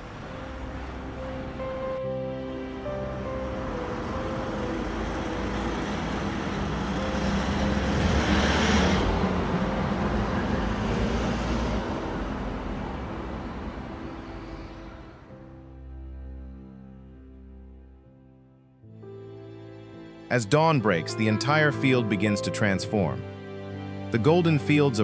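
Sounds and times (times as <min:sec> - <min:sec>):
combine harvester driving past: 0:00.0 - 0:16.8
faint background music: 0:00.0 - 0:25.0.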